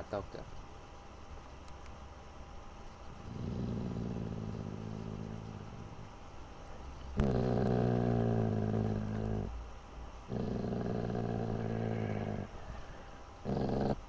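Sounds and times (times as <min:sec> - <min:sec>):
dog growling: 0:03.2 - 0:06.1, 0:07.0 - 0:09.6, 0:10.2 - 0:14.0.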